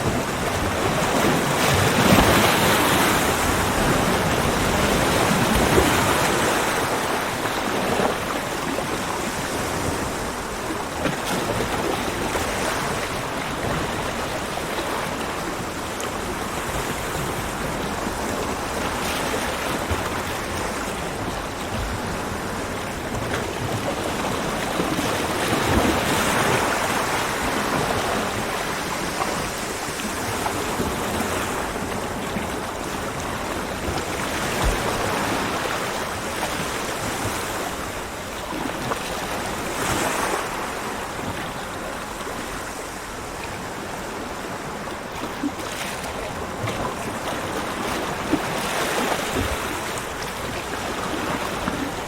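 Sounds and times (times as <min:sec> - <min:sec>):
ocean waves breaking on beach: 0:00.0 - 0:52.0.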